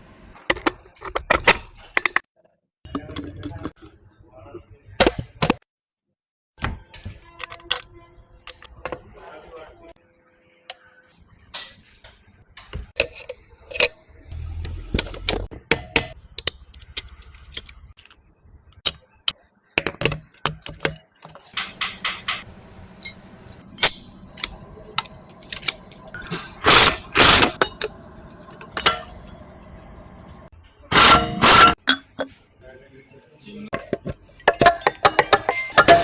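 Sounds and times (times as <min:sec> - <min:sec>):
metal tools clinking on engine parts: 0:21.5 - 0:29.7, 0:34.2 - 0:36.0
steady low hum: 0:21.6 - 0:30.5.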